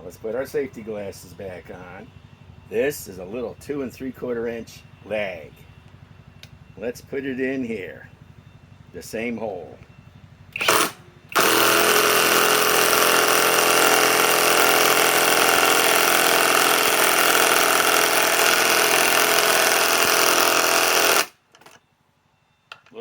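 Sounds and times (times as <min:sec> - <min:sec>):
impact wrench driving a screw: 0:10.6 - 0:21.8.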